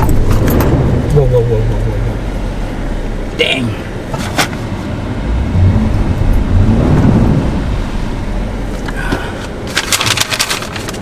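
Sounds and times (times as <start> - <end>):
off-road engine revving under load: 0.4 - 9.2.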